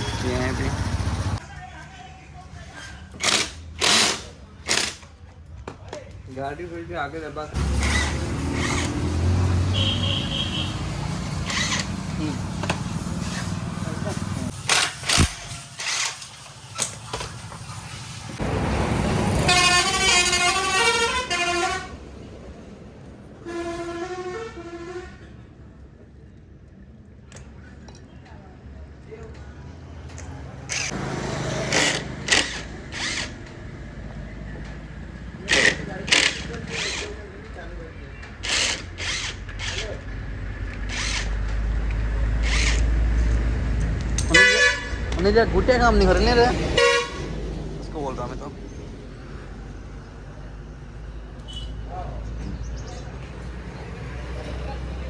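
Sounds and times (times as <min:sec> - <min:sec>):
vehicle engine running: 0:00.0 - 0:01.4
vehicle horn: 0:09.6 - 0:11.0, 0:19.3 - 0:22.0, 0:23.4 - 0:25.3, 0:44.3 - 0:45.0, 0:46.8 - 0:47.4
musical horn tune: 0:19.3 - 0:21.9.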